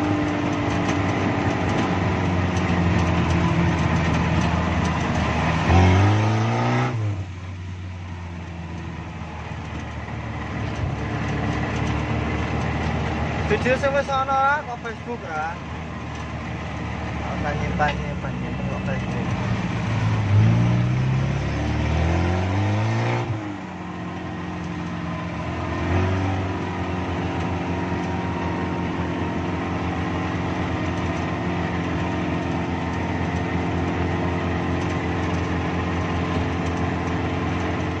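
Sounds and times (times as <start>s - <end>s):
car engine revving: 0.0s - 7.8s, 16.0s - 38.0s.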